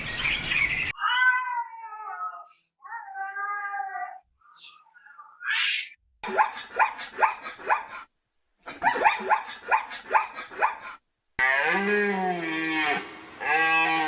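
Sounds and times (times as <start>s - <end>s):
cow mooing: 11.4s - 14.0s.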